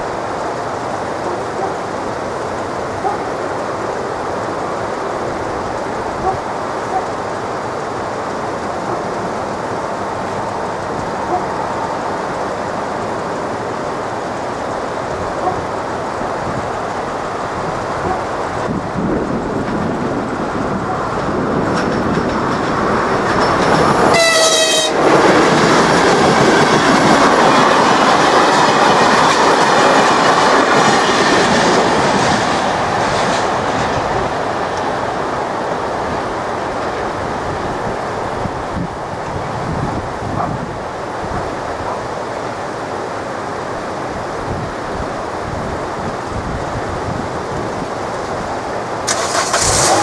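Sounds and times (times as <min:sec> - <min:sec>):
train rushing and rumbling past: 0:00.0 - 0:50.0
train horn blast: 0:24.1 - 0:25.1.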